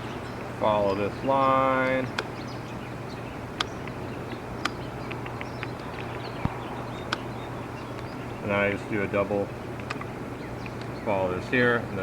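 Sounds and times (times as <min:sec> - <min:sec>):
sharp ticks: 0:01.8 - 0:02.3, 0:03.6 - 0:07.3.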